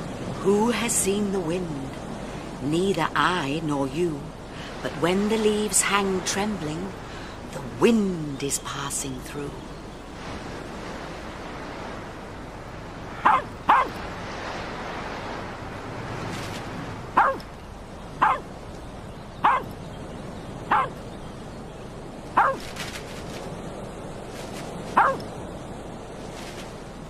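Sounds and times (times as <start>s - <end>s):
small dog barking: 13.2s - 14.0s, 17.2s - 17.5s, 18.2s - 18.5s, 19.4s - 19.7s, 20.7s - 21.0s, 22.4s - 22.7s, 25.0s - 25.2s.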